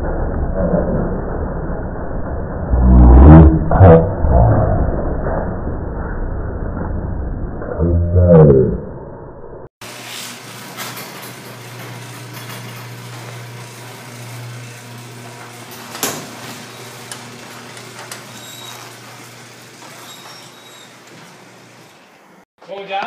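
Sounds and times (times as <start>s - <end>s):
garage door opener motor hum: 9.8s - 22.5s.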